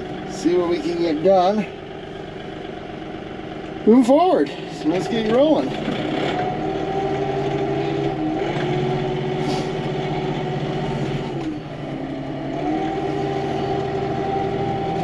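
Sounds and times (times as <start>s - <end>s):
tractor engine running: 0.0s - 15.0s
blade plowing snow: 5.0s - 11.5s.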